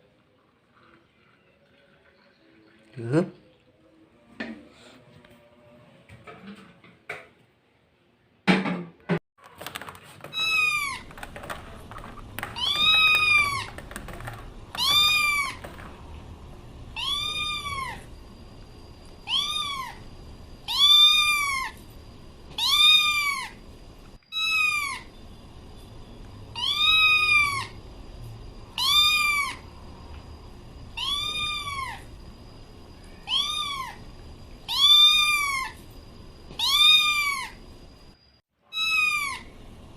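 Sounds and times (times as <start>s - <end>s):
cat meowing: 10.4s - 15.8s, 17.0s - 18.1s, 19.2s - 20.0s, 20.7s - 21.8s, 22.5s - 23.6s, 24.3s - 25.1s, 26.6s - 27.8s, 28.8s - 29.6s, 31.0s - 32.0s, 33.1s - 34.0s, 34.7s - 35.8s, 36.5s - 37.6s, 38.7s - 39.5s.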